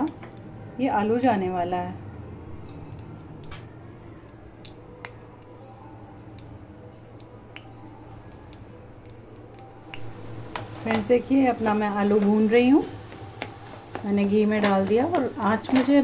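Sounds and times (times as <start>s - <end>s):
ghee crackling and popping: 0.0s - 0.9s, 7.1s - 16.0s
steady low hum: 0.0s - 15.7s.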